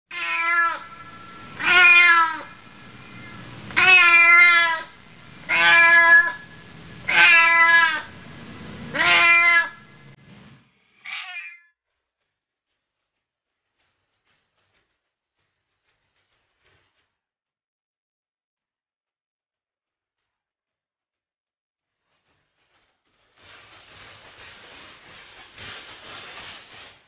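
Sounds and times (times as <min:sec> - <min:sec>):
cat meowing: 0:00.1 - 0:02.6, 0:03.2 - 0:04.9, 0:05.5 - 0:06.5, 0:07.1 - 0:08.2, 0:08.9 - 0:09.9, 0:11.0 - 0:11.7.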